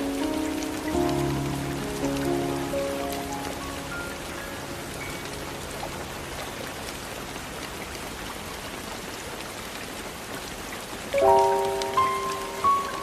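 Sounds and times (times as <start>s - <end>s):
soft held music chords: 0.0s - 7.3s
steady rain falling: 0.0s - 13.0s.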